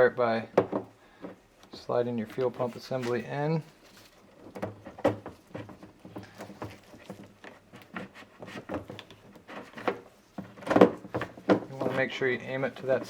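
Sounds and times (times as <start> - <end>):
knocks and clicks against plastic tank: 0.5 - 1.4, 4.4 - 12.0.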